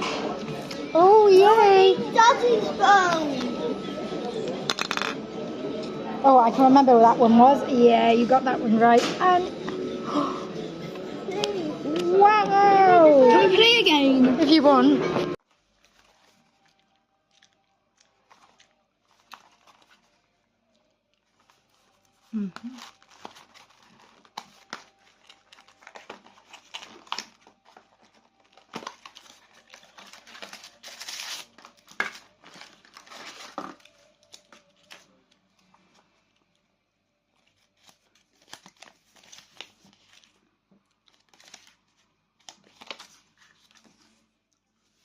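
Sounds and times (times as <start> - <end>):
packaging crinkling and rustling: 15.4 - 45.0.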